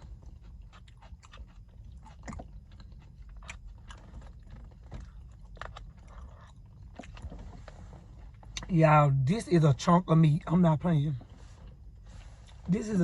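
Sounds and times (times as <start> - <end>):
person chewing: 0.0 - 8.7.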